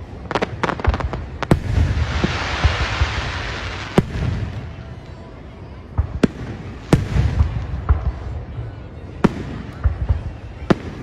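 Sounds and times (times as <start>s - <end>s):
fireworks bangs: 0.0s - 5.0s, 5.9s - 11.0s
fireworks crackling: 0.0s - 11.0s.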